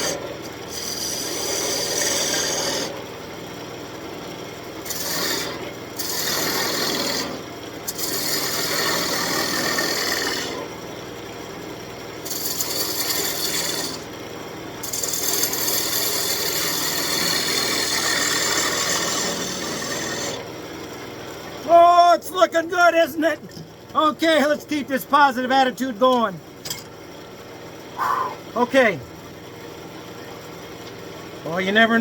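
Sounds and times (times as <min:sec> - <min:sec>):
tool scraping spinning wood: 0:00.0 - 0:03.1, 0:04.8 - 0:10.8, 0:12.2 - 0:14.1, 0:14.8 - 0:20.5
lathe motor humming: 0:00.0 - 0:03.6, 0:04.8 - 0:11.2, 0:12.2 - 0:26.5.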